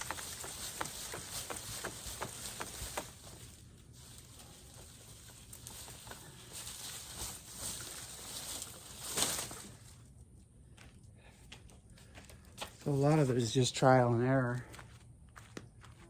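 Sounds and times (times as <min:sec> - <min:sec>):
dry corn stalks rustling: 0:00.0 - 0:10.2, 0:12.0 - 0:14.8.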